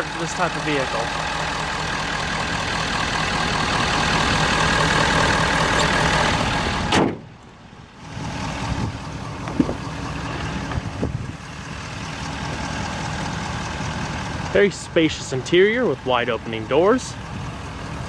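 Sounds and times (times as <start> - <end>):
vehicle engine idling: 0.0 - 18.0
vehicle panel slamming: 6.9 - 7.5, 9.4 - 10.0.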